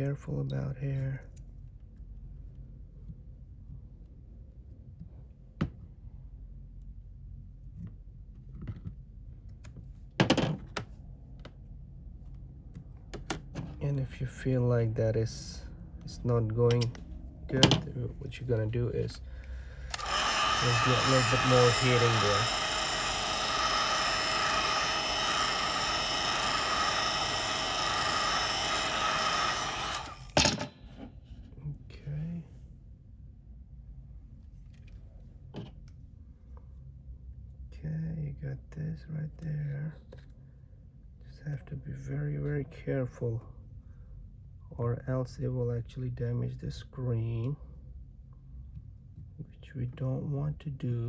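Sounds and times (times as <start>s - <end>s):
low hum: 13.8s - 30.5s
heat gun blowing air: 19.9s - 30.4s.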